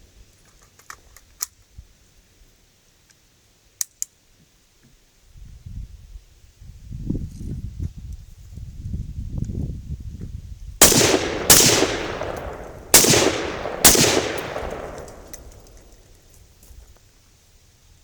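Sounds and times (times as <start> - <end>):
low rumbling noise: 10.8 - 15.9
pistol shots with echo: 10.8 - 16.0.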